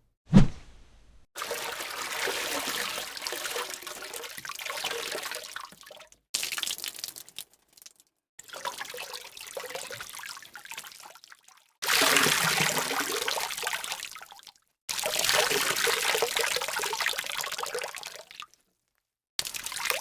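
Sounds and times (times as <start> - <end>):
water pouring and trickling: 1.4 - 18.7, 19.4 - 20.0.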